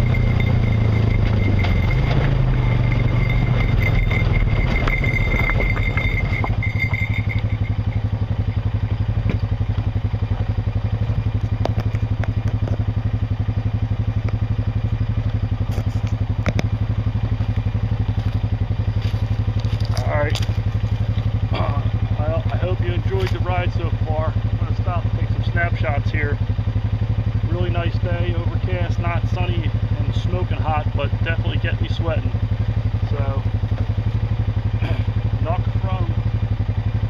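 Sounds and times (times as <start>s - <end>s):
thin high whine: 0.0s - 8.3s
atv engine puttering: 0.0s - 37.0s
sharp clicks and knocks: 11.1s - 12.9s, 15.2s - 16.8s.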